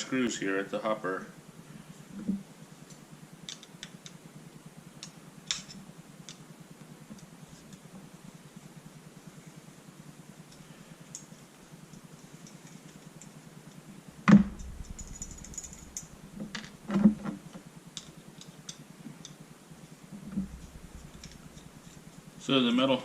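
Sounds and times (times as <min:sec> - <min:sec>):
sharp knock: 0:14.3 - 0:17.2.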